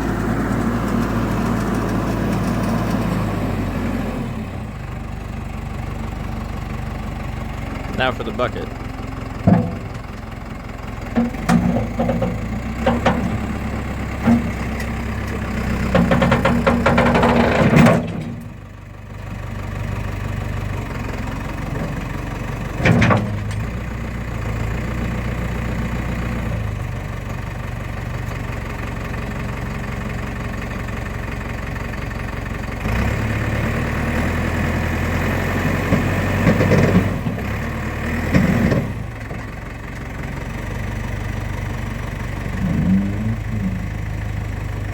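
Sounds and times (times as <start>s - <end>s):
backhoe engine running: 0.0s - 44.9s
metal clanks and knocks: 9.4s - 10.3s, 11.1s - 18.6s, 22.8s - 23.7s.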